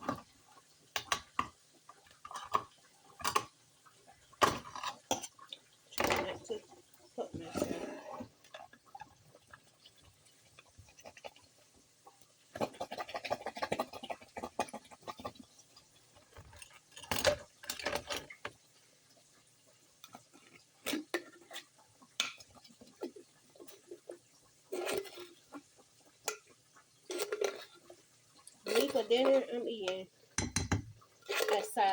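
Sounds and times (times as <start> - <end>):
dishes and utensils clinking: 30.4 - 31.8.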